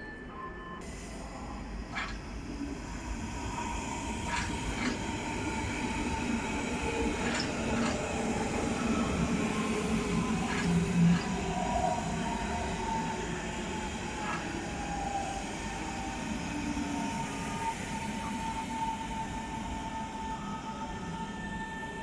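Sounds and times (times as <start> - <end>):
train rolling: 0.8 - 19.8
wheels clacking over rail joints: 7.0 - 11.6.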